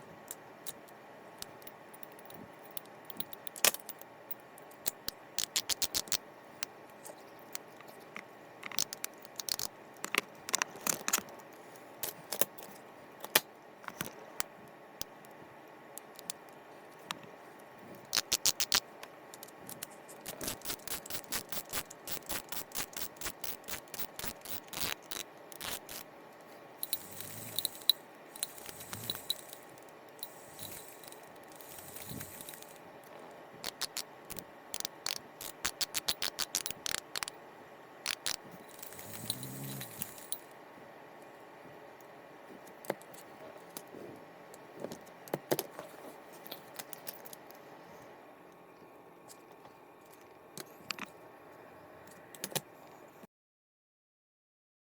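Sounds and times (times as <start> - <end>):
metal reel parts clicking and rattling: 0.3 - 11.4, 18.0 - 26.0, 26.8 - 37.3.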